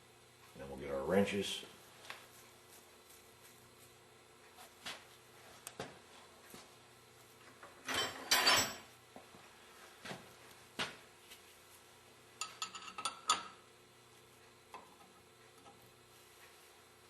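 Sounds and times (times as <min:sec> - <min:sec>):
metal wrenches clattering: 0:07.9 - 0:08.9, 0:12.4 - 0:13.5.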